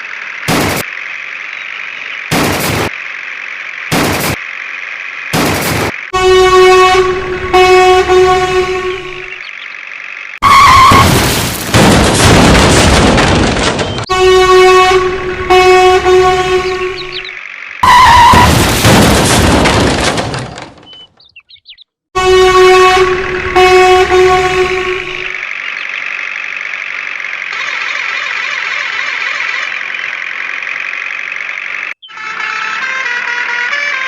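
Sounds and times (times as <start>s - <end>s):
rumble of vehicle noise: 0.0s - 34.0s
cartoon truck horn blasts: 6.1s - 9.4s, 10.4s - 11.2s, 14.1s - 18.6s, 22.1s - 25.4s, 32.1s - 34.0s.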